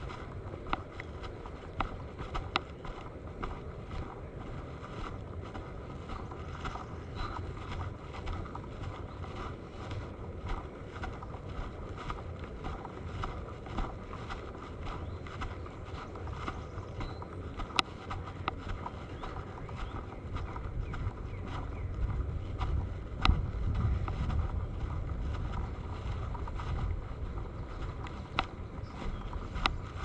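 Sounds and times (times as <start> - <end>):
wind on microphone: 0.0 - 30.0.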